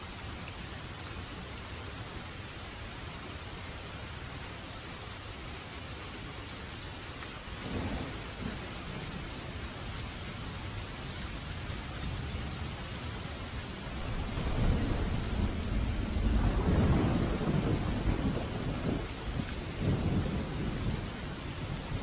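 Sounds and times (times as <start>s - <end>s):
waterfall rushing: 13.3s - 19.2s.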